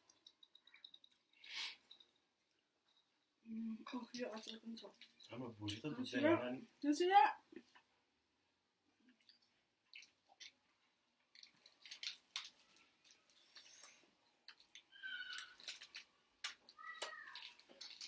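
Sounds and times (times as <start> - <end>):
wet eating smacks and clicks: 9.1 - 10.6, 11.3 - 18.0.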